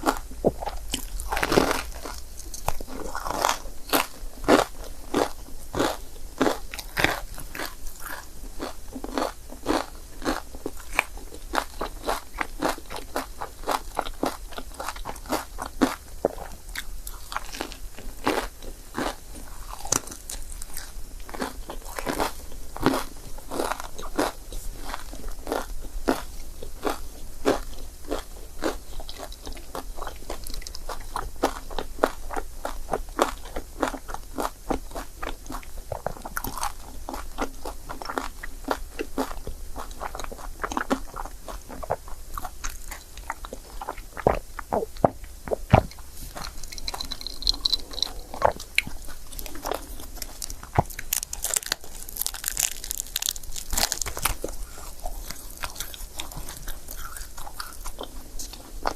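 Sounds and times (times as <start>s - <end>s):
chewing and biting food: 0.0s - 58.9s
wet mouth clicks: 41.8s - 51.9s.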